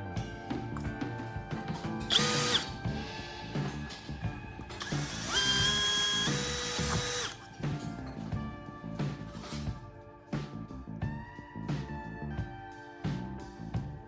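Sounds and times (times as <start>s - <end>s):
background music: 0.0s - 14.0s
small electric power tool whining: 2.1s - 2.8s, 4.8s - 7.5s.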